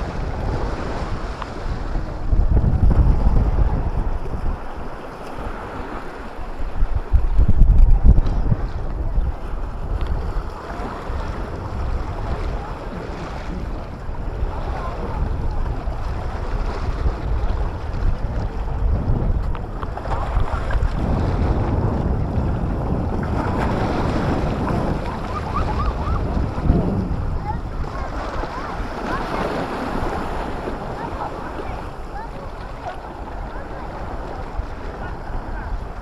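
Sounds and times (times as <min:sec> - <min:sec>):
sea waves: 0:00.0 - 0:36.0
wind buffeting microphone: 0:00.0 - 0:36.0.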